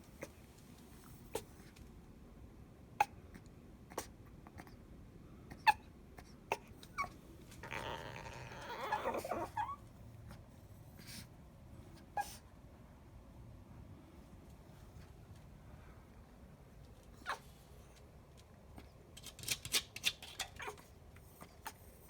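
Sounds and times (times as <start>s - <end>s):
small dog yapping: 5.5s - 9.8s, 12.1s - 12.4s, 17.2s - 17.6s, 20.1s - 21.8s
rough dog vocal sound: 7.0s - 9.8s.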